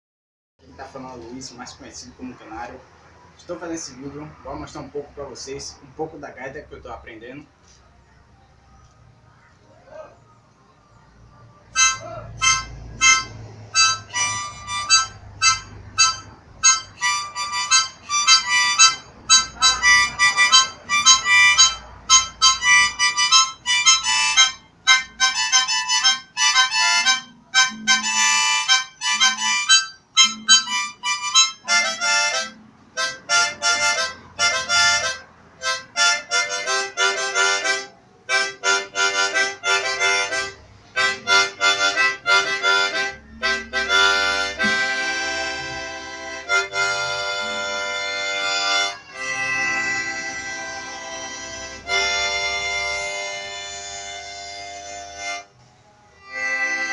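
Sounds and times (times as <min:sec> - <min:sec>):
harmonica playing short notes: 0:11.7 - 0:56.9.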